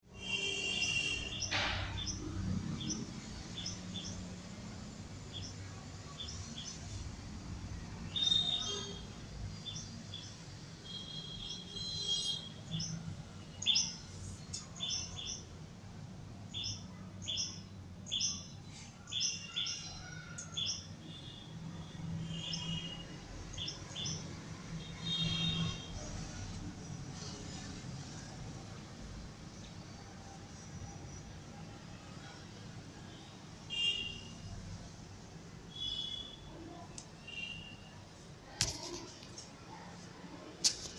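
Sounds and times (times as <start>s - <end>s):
birds chirping: 0.2s - 4.3s.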